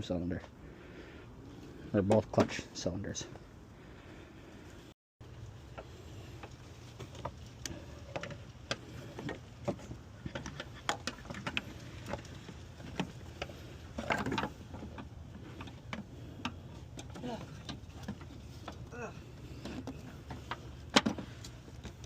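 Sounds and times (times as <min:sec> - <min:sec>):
steady low hum: 0:00.0 - 0:22.0
rattle of parts: 0:05.7 - 0:22.0.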